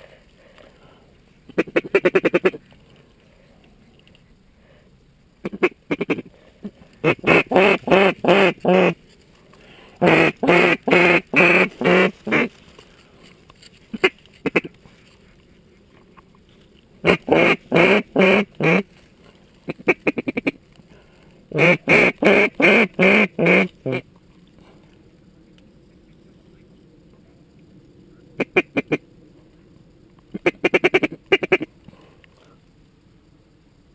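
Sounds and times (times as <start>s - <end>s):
duck call quacks: 1.6s - 2.6s, 5.4s - 6.3s, 7.0s - 9.0s, 10.0s - 12.5s, 13.9s - 14.7s, 17.0s - 18.8s, 19.7s - 20.6s, 21.5s - 24.0s, 28.4s - 29.0s, 30.4s - 31.7s.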